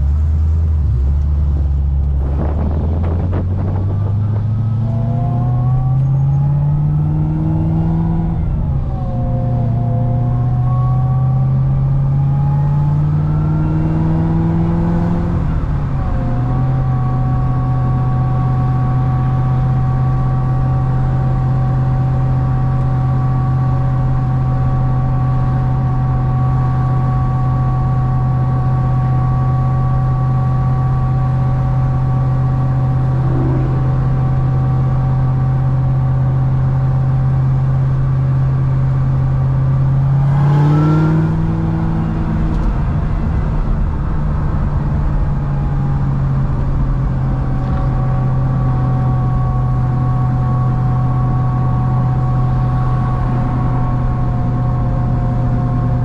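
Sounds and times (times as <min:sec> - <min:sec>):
car engine cruising: 0:00.0 - 0:56.0.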